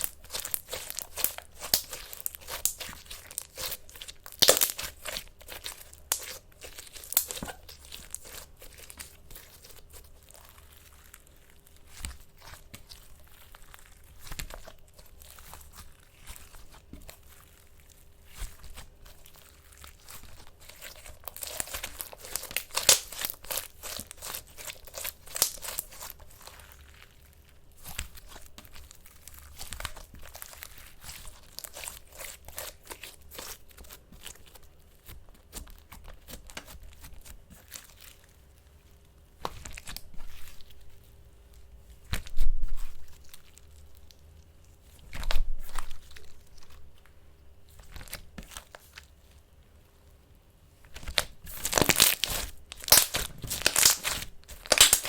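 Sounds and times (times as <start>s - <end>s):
slime squished by hand: 0.0s - 38.7s, 50.9s - 55.0s.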